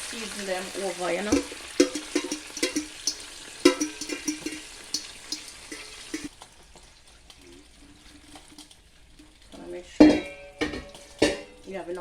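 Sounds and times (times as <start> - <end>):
chicken sizzling in a pot: 0.0 - 12.0
spoon knocking against pot: 1.3 - 6.3, 10.0 - 11.7.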